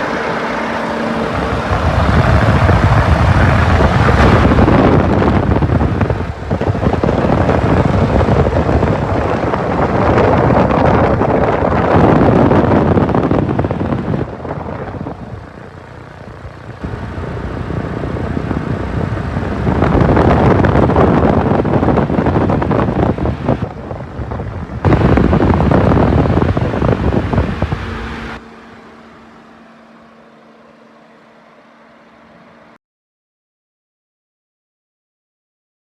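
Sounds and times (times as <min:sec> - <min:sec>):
wind buffeting microphone: 0:00.0 - 0:28.4
excavator diesel engine running: 0:00.0 - 0:32.3
faint steady hum: 0:00.0 - 0:32.8.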